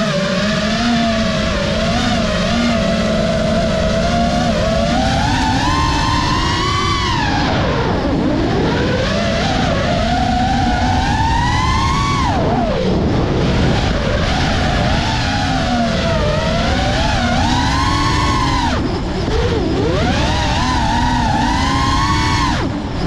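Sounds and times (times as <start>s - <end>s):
drone motors whining: 0.0s - 23.0s
rush of air noise: 10.7s - 23.0s.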